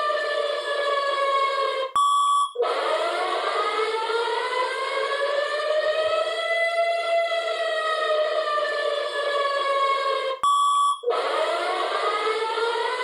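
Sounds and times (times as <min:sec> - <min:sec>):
short steady beep: 0:02.0 - 0:02.6, 0:10.4 - 0:11.1
wailing alarm siren: 0:02.6 - 0:09.2, 0:11.1 - 0:13.0.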